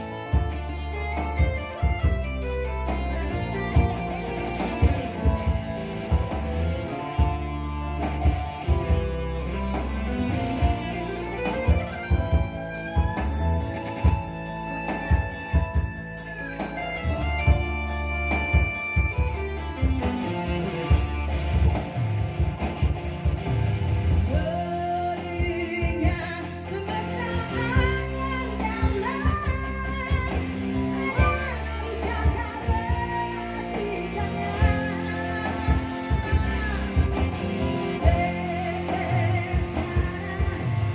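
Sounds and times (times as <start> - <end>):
song over pa loudspeakers: 0.0 - 40.9.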